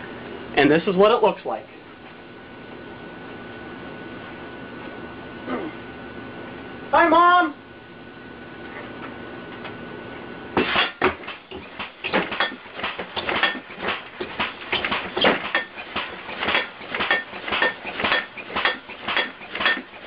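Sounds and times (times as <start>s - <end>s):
bed frame banging and rattling: 10.6s - 20.0s.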